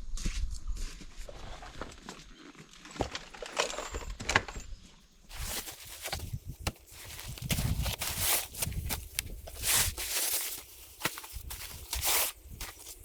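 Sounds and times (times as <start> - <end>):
footsteps crunching on forest floor: 5.3 - 13.0.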